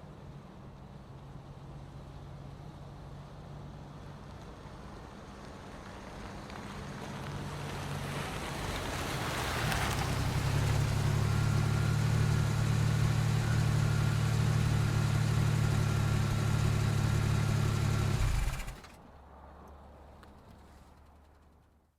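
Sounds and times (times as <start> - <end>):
car engine running: 9.6 - 19.0.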